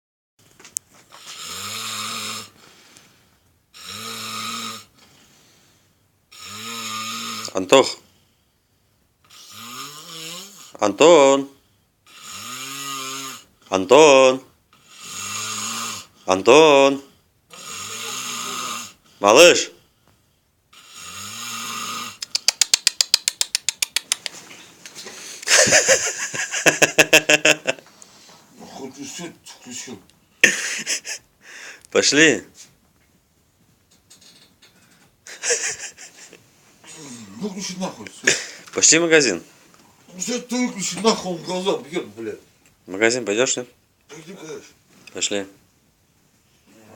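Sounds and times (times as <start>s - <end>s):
man snoring: 1.2s - 2.6s, 3.7s - 5.0s, 6.3s - 7.7s, 9.3s - 10.8s, 12.1s - 13.5s, 14.8s - 16.2s, 17.5s - 19.0s, 20.7s - 22.2s, 36.8s - 38.6s.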